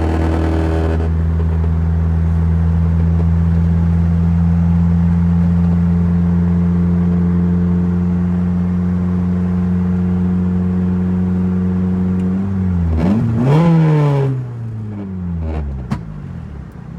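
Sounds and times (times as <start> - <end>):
car engine revving: 0.0 - 2.4, 12.3 - 16.0.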